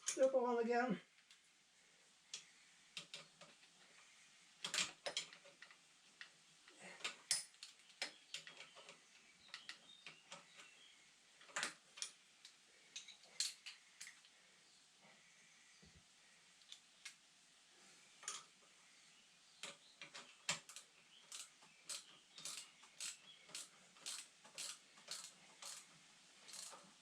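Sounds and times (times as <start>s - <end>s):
small parts and tools clicking: 2.2s - 14.4s, 16.6s - 17.2s, 18.2s - 18.7s, 19.6s - 27.0s.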